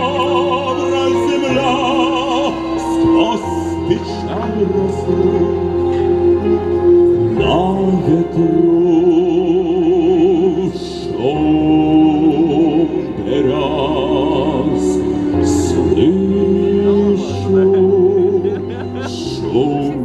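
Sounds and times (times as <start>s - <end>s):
slow melody with heavy vibrato: 0.0s - 20.0s.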